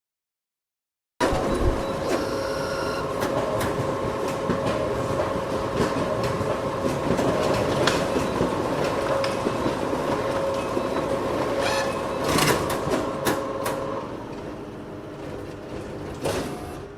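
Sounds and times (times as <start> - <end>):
photocopier humming: 1.2 - 16.9
photocopier clicks and clacks: 3.0 - 13.9.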